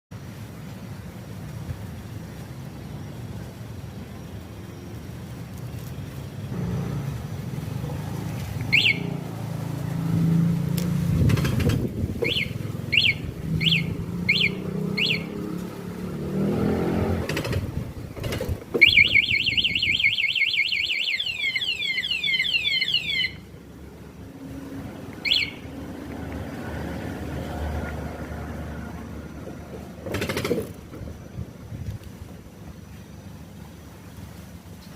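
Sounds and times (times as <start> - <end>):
alarm siren chirping: 8.7 - 9.3, 12.2 - 15.5, 18.8 - 23.5, 25.2 - 25.7.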